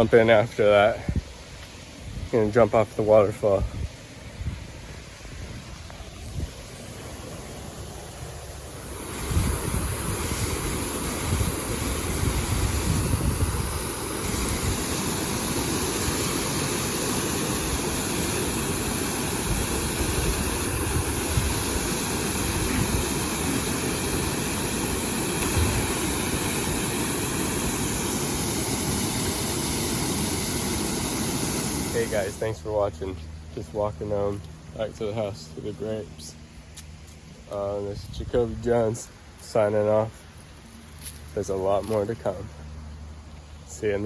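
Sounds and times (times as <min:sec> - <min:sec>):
waterfall roaring: 0:06.2 - 0:32.4.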